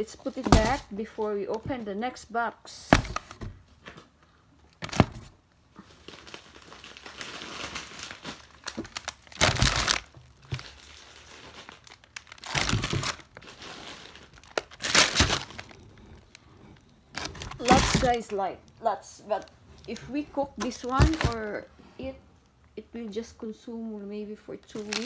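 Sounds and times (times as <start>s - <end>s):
plastic packaging crinkling: 0.2s - 0.9s, 4.8s - 21.6s, 24.6s - 25.0s.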